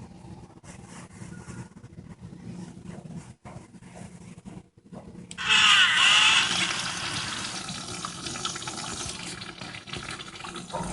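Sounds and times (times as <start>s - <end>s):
toilet flushing: 5.4s - 10.9s
water refilling: 5.4s - 10.9s.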